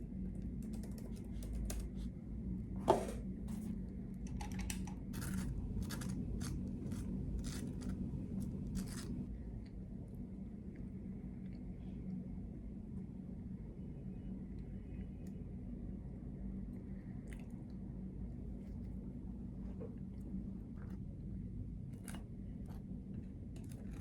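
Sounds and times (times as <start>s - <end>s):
low room hum: 0.0s - 24.0s
scratchy snips and rustles: 4.6s - 9.3s.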